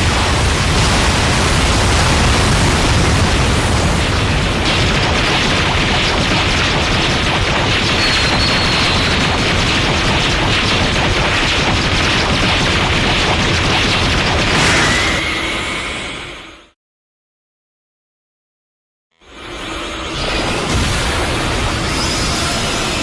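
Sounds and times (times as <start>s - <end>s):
explosion-like rumble: 0.0s - 16.5s.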